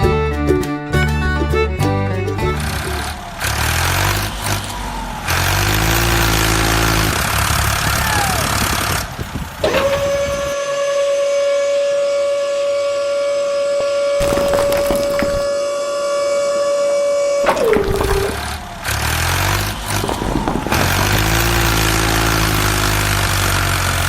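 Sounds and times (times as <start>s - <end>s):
truck engine revving: 2.1s - 10.6s, 13.8s - 24.0s.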